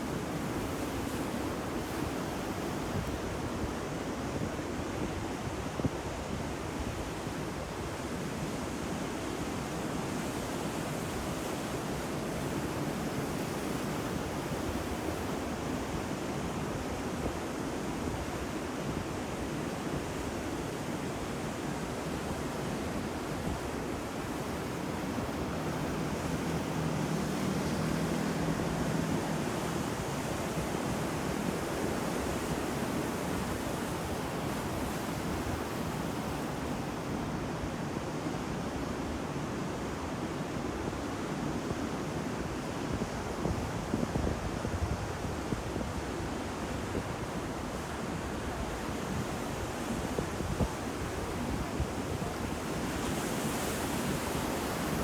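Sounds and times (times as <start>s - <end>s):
ocean waves breaking: 22.2s - 37.4s, 47.6s - 55.0s.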